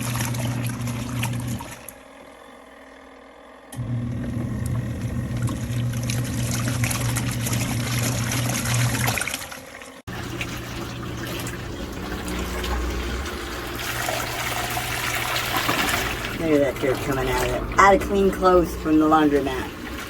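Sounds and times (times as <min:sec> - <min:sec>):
washing machine motor hum: 0:00.0 - 0:20.0
water trickling: 0:05.2 - 0:20.0.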